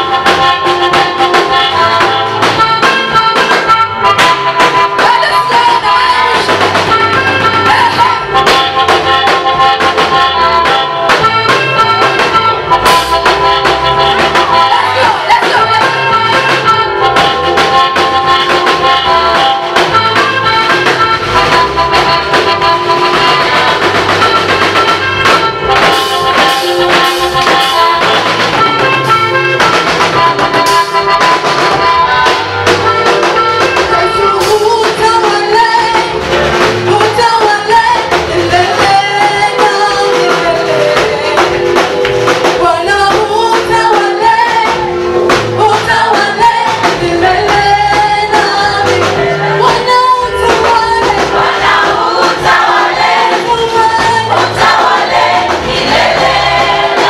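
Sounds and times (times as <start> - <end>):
gospel music with drums: 0.0 - 57.0
person singing: 4.7 - 8.8, 11.6 - 19.6, 33.8 - 36.2, 36.9 - 54.5.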